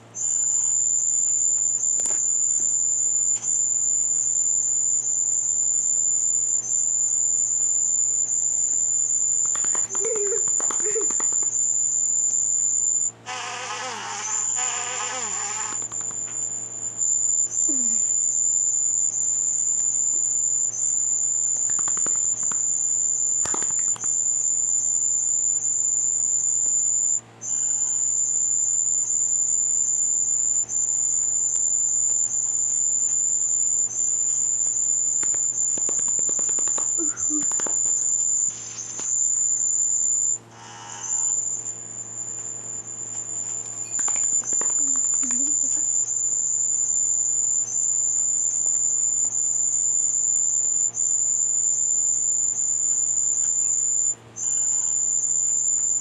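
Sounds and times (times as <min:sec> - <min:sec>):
faint low hum: 0:00.0 - 0:56.0
high-pitched electronic whine: 0:00.0 - 0:56.0
hiss: 0:13.3 - 0:15.8, 0:40.6 - 0:41.4.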